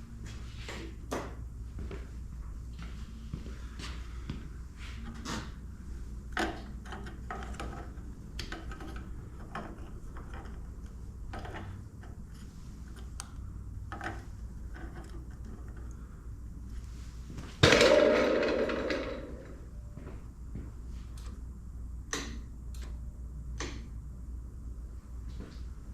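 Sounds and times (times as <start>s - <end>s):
small clicks and knocks of hand work: 6.3s - 16.0s, 21.1s - 21.4s, 22.1s - 24.0s.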